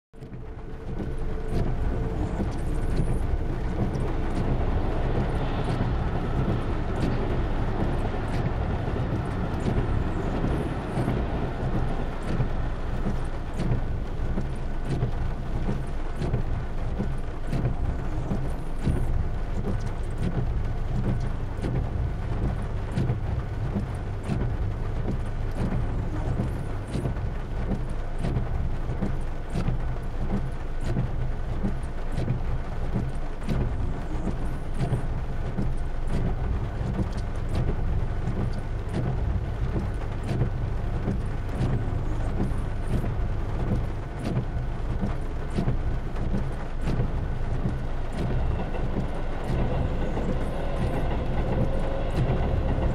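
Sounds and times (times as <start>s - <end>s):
low rumble of passing traffic: 0.2s - 29.3s, 31.1s - 52.9s
rain: 0.2s - 52.9s.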